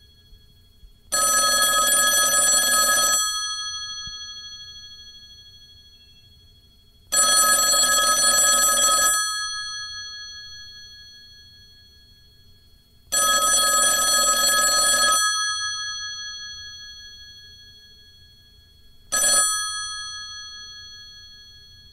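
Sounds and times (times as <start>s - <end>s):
telephone ringing: 1.1s - 5.2s, 7.1s - 11.0s, 13.1s - 17.4s, 19.1s - 21.9s.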